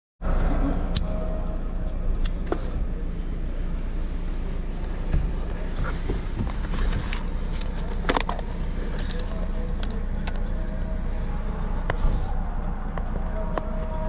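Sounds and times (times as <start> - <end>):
steady low rumble: 0.2 - 14.0.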